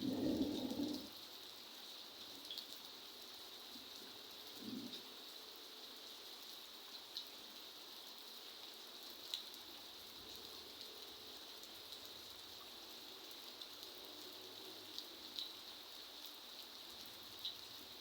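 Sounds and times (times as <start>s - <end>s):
faint rain patter: 0.0s - 18.0s
drip ticks: 15.4s - 15.6s.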